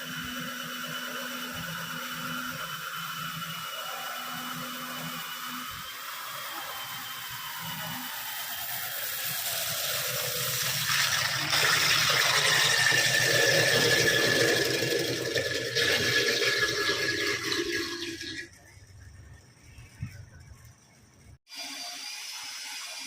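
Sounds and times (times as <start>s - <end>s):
power tool motor whining and grinding: 0.0s - 16.0s.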